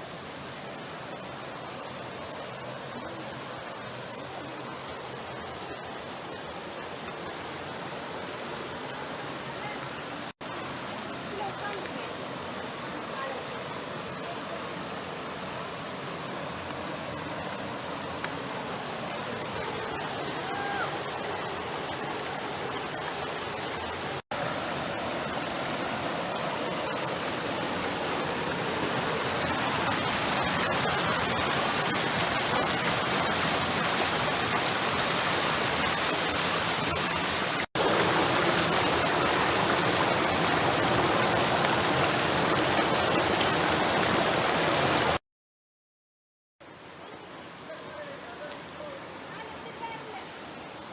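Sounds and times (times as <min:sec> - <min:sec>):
waterfall roaring: 0:00.9 - 0:45.2, 0:47.0 - 0:50.9.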